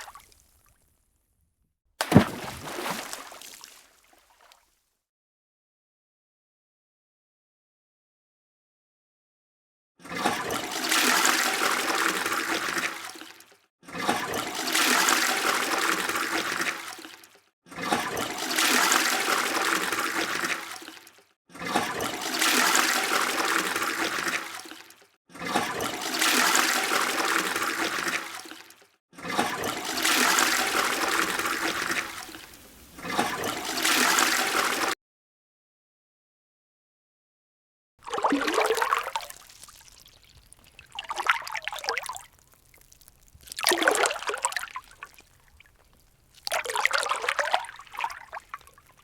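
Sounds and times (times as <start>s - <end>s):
rushing water bursts: 17.8s - 21.0s, 21.7s - 24.9s, 25.5s - 35.0s.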